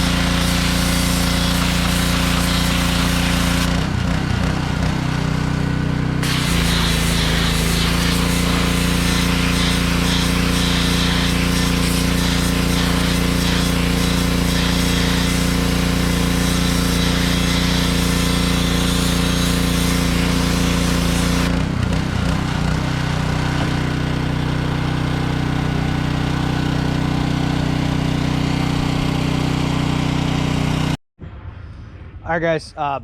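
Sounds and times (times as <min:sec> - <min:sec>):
loud hissing spray jet: 0:00.0 - 0:03.7, 0:06.2 - 0:21.5
pressure washer engine running: 0:00.0 - 0:31.0.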